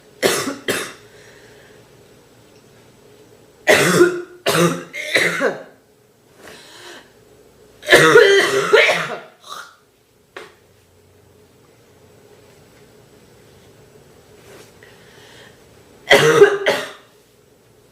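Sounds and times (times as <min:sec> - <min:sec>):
girl coughing: 0:00.2 - 0:01.0, 0:03.7 - 0:05.8, 0:07.8 - 0:09.8, 0:16.1 - 0:17.1.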